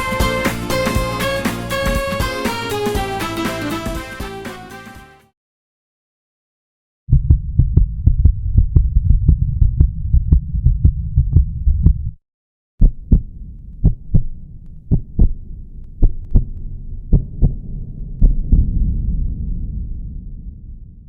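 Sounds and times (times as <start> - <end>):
bass-heavy music with pulsing beat: 0.0 - 5.2.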